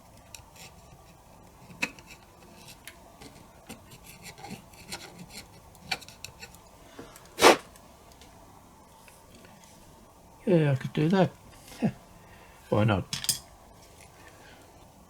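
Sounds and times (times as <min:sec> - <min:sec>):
short scrape: 0:07.4 - 0:07.7.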